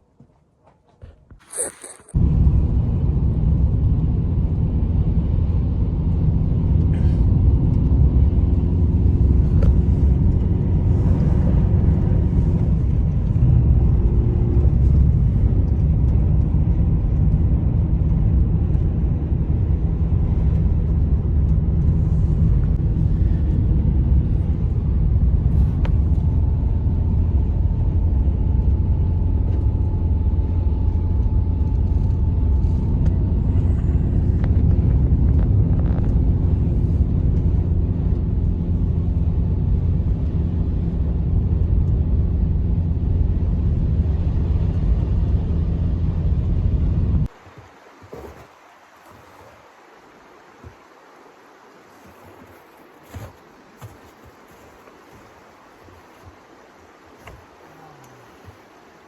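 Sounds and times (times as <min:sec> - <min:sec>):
strong blizzard wind: 0:01.6 - 0:59.0.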